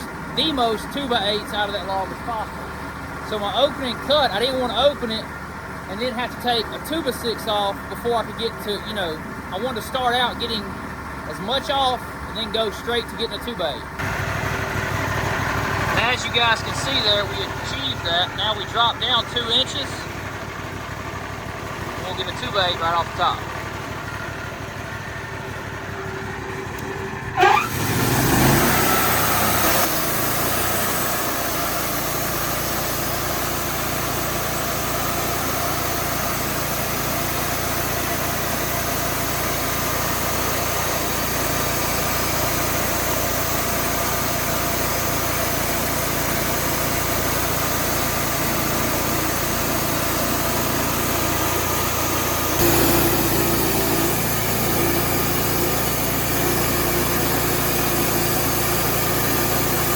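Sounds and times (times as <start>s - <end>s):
sawmill engine running: 0.0s - 59.9s
band saw blade cutting log: 15.9s - 20.1s, 27.4s - 59.9s.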